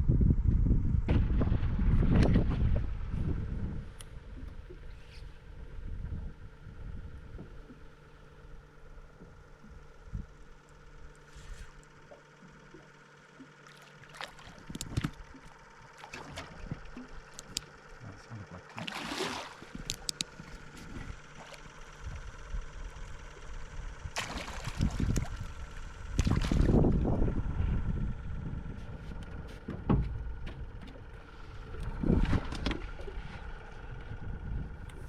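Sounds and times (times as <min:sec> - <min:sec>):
faint steady hum: 0:00.0 - 0:35.0
water gurgling around boat: 0:00.6 - 0:35.0
rushes of water noise: 0:11.4 - 0:17.8, 0:18.5 - 0:23.4, 0:24.1 - 0:27.3, 0:30.0 - 0:34.5
knocks and clicks of gear: 0:14.6 - 0:18.0, 0:19.6 - 0:22.2, 0:28.7 - 0:34.2.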